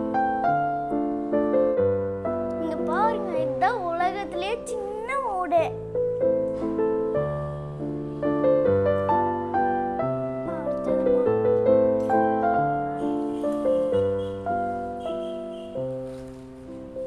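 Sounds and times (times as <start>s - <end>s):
piano-like keyboard melody: 0.0s - 17.0s.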